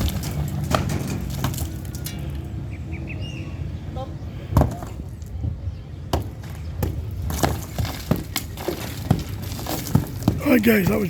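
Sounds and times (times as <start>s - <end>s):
demolition knocks and cracks: 0.0s - 2.5s, 6.1s - 11.0s.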